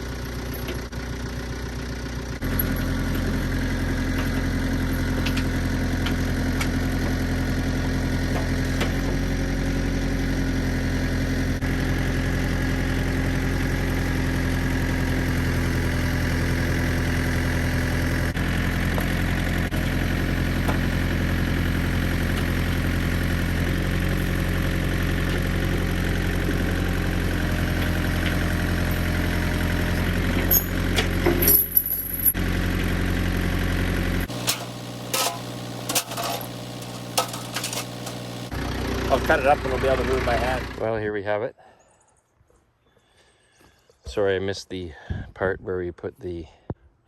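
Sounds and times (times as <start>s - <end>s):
tractor engine idling: 0.0s - 41.1s
metallic knocks and clanks: 34.4s - 38.2s.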